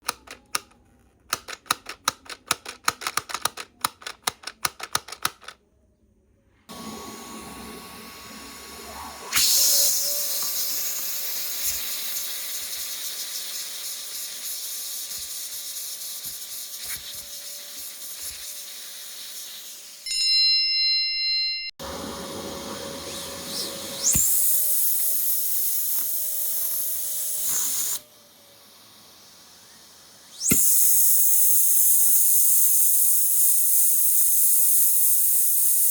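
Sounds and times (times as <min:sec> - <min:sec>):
vacuum cleaner running: 0:06.7 - 0:20.1, 0:21.8 - 0:35.9.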